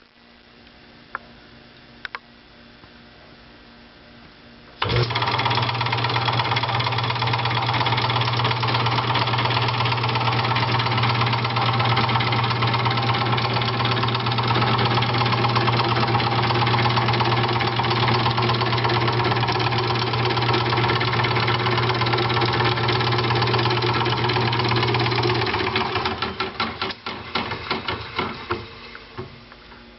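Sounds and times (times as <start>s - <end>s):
electric motor hum: 4.8s - 26.5s.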